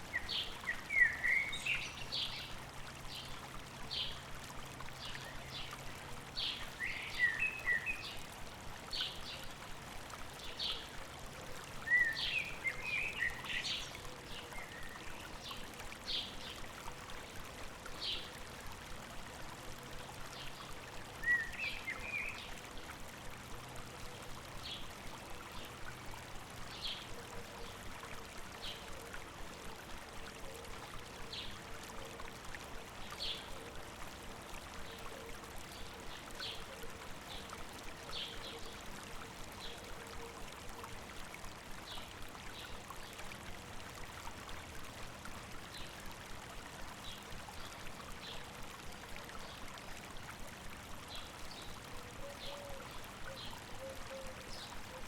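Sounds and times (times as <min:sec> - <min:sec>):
stream trickling: 0:00.0 - 0:55.0.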